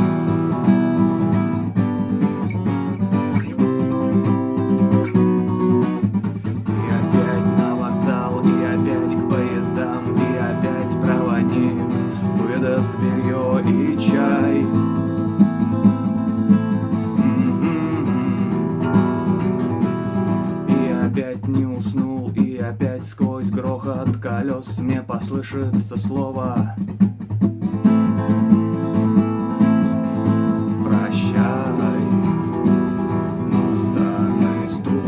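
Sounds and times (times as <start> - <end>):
acoustic guitar strumming chords: 0.0 - 35.0.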